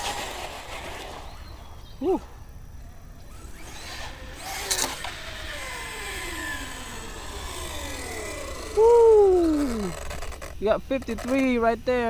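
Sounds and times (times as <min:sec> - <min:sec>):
toy truck electric motor whining: 0:03.2 - 0:11.6.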